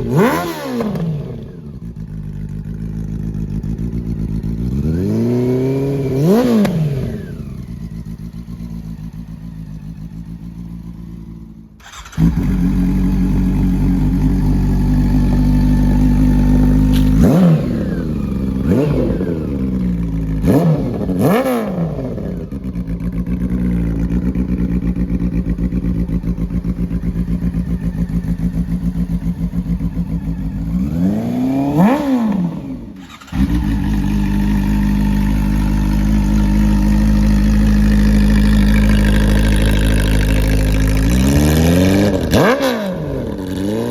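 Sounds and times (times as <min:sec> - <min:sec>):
throttle blips revving engine: 0:00.0 - 0:01.7, 0:04.8 - 0:07.8, 0:11.8 - 0:22.5, 0:30.4 - 0:43.9
motorcycle engine idling: 0:00.0 - 0:43.9.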